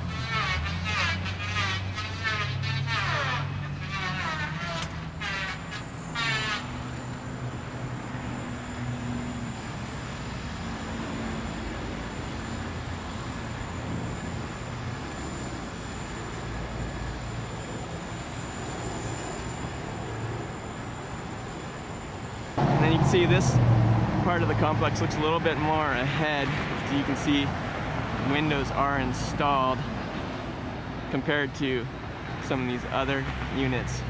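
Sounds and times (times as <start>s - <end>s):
engine and road noise: 0.0s - 34.0s.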